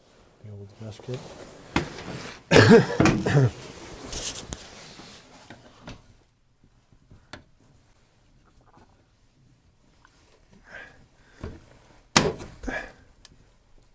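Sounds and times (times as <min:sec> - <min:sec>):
rubbing and handling rubber: 0:00.5 - 0:05.8
short scrape: 0:03.7 - 0:05.3.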